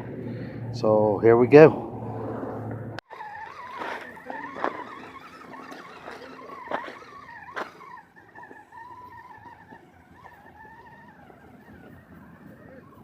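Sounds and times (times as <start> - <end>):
rc car motor whining: 3.0 - 13.0.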